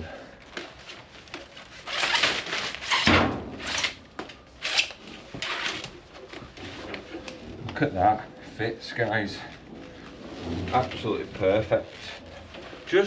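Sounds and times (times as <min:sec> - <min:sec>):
plastic conduit scraping: 0:09.7 - 0:12.9.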